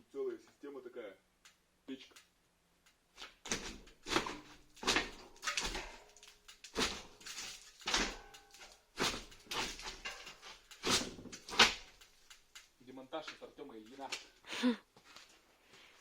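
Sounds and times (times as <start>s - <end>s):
cladding knocks scrapes and clatters: 3.2s - 14.3s.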